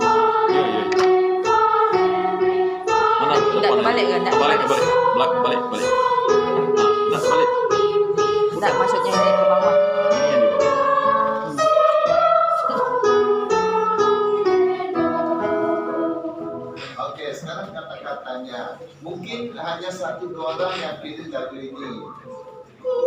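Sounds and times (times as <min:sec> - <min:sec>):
person singing: 0:00.4 - 0:01.0, 0:02.9 - 0:13.8.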